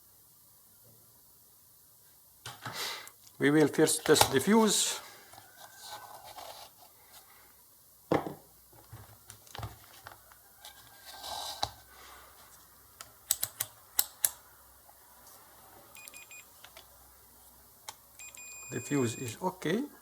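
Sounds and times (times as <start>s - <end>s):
thump on workbench: 8.1s - 8.5s
multimeter continuity beep: 16.0s - 16.5s, 18.2s - 19.4s.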